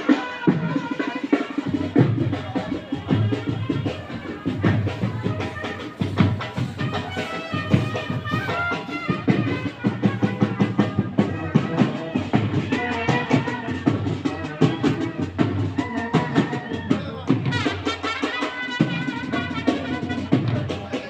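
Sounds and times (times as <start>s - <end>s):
fast drum beating: 0.0s - 21.0s.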